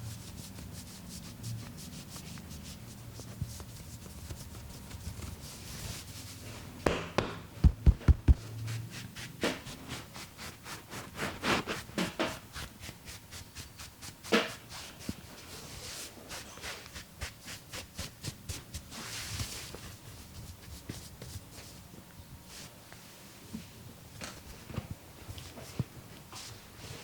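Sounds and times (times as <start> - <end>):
hands slapping and tapping: 6.8 - 8.4
heavy thumps: 6.8 - 8.4.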